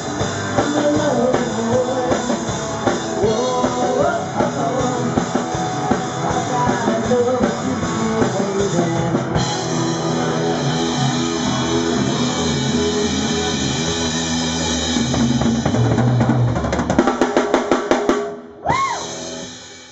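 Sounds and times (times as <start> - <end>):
electric guitar: 0.0 - 17.4
bass guitar: 0.0 - 17.6, 18.4 - 19.9
drum kit: 0.0 - 19.9
rising and falling tone: 9.1 - 17.1.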